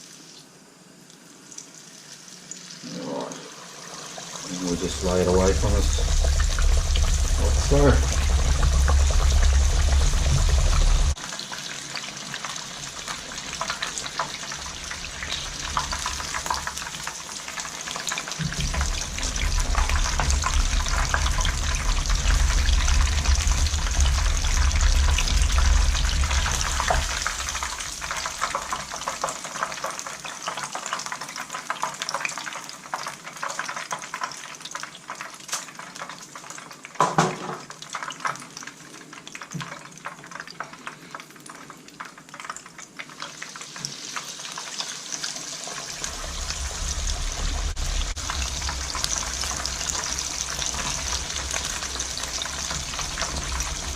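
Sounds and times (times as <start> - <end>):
chicken deep-frying in oil: 0.0 - 53.9
low rumble: 4.7 - 11.2, 18.5 - 28.0, 46.0 - 53.9.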